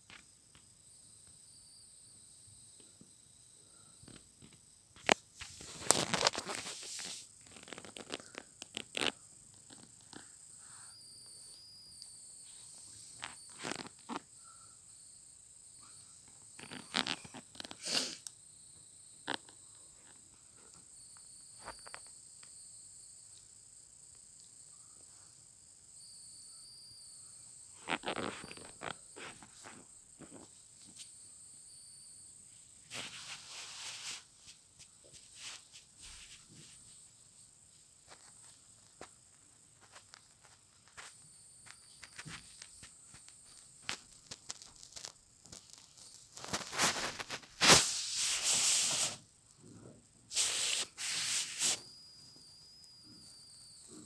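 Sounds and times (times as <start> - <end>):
faint high-pitched chirr: 0.0 - 54.0
rustling and handling noises: 4.1 - 14.4, 16.3 - 18.3, 27.8 - 31.2, 32.6 - 54.0
scrapes: 5.0 - 9.2, 43.9 - 51.9.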